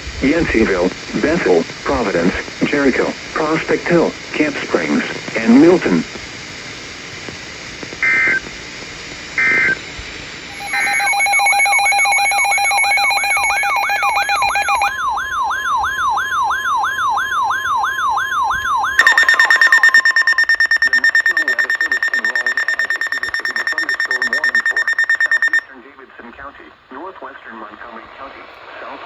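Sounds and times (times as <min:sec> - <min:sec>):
electronic alert tone: 0:10.5 - 0:14.9, 0:19.0 - 0:25.6
two-tone data bursts: 0:10.5 - 0:14.9, 0:19.0 - 0:25.7.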